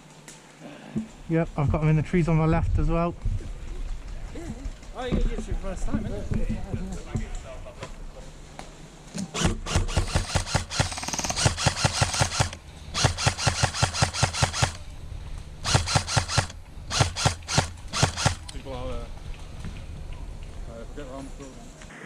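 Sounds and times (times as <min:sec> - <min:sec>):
airsoft gun firing bursts: 0:09.4 - 0:14.9, 0:15.6 - 0:18.6.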